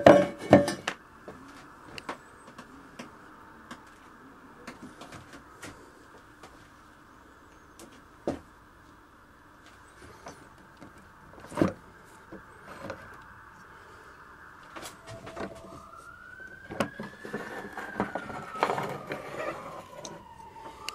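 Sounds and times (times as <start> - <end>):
hardware clicks and knocks: 0.0 - 1.0
emergency vehicle siren wailing: 11.2 - 20.9.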